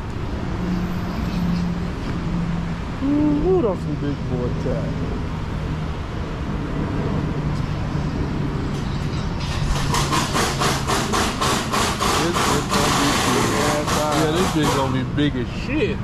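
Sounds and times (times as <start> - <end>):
vehicle engine running: 0.0 - 16.0
rapid rattling strikes: 9.4 - 15.1.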